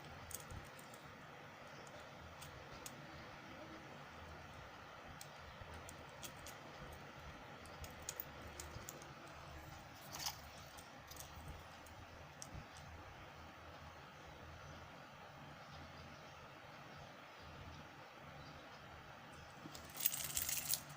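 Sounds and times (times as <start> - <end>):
small objects clicking and tapping: 0.0 - 1.0, 5.2 - 7.0, 7.6 - 9.4, 19.7 - 20.9
faint steady hum: 0.0 - 20.9.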